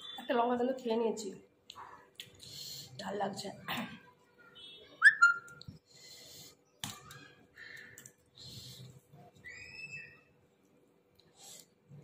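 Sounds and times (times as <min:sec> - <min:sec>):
sharp whistle-like chirp: 0:05.0 - 0:05.5.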